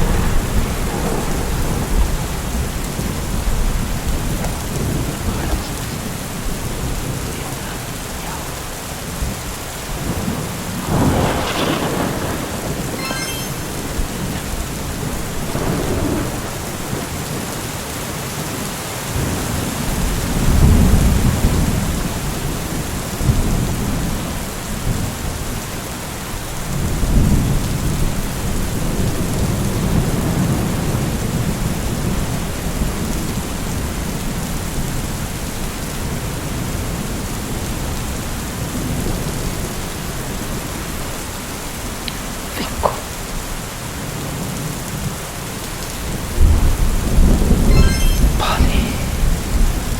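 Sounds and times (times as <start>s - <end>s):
rolling thunder: 0.0s - 13.0s, 13.8s - 17.5s
steady rain: 0.0s - 49.9s.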